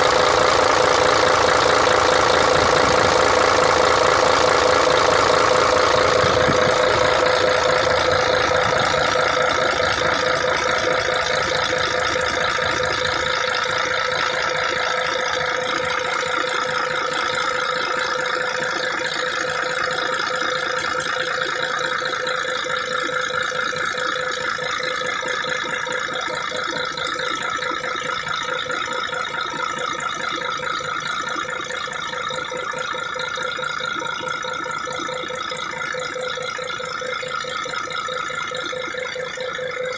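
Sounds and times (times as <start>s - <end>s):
truck diesel engine clattering: 0.0s - 22.3s.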